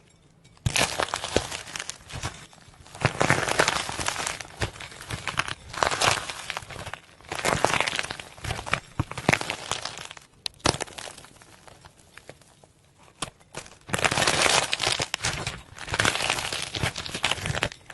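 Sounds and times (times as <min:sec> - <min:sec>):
slime crackling and popping: 0:00.6 - 0:17.9.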